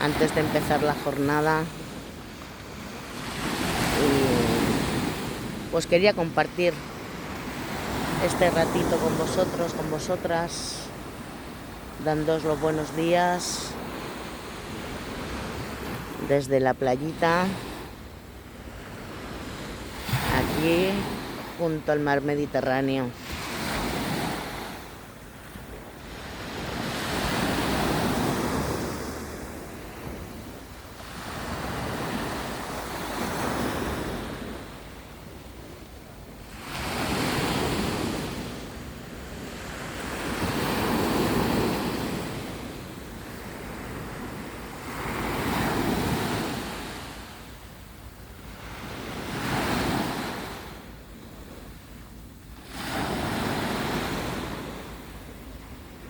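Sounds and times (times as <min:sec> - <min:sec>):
sea waves washing onto beach: 0:00.0 - 0:16.3.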